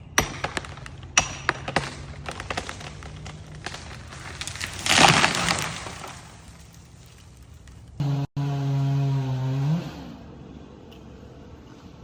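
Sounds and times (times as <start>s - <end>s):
wood cracking and popping: 0.0s - 8.0s
tree crashing to the ground: 0.2s - 8.0s.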